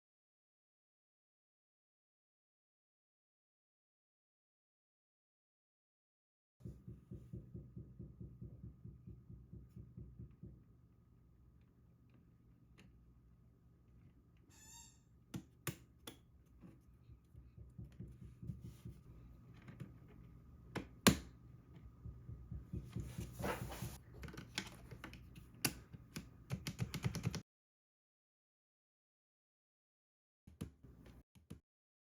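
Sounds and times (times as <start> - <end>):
mechanical keyboard typing: 26.1 - 27.4.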